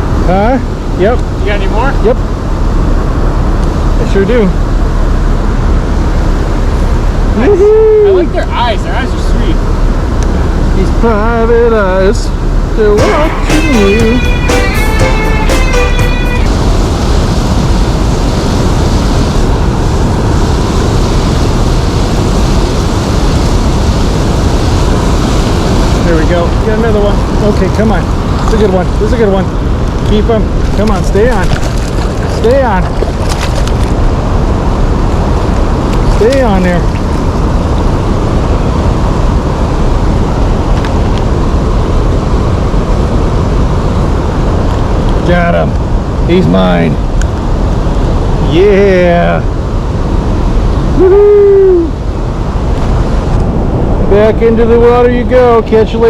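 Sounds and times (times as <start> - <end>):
wind buffeting microphone: 16.4 - 56.0.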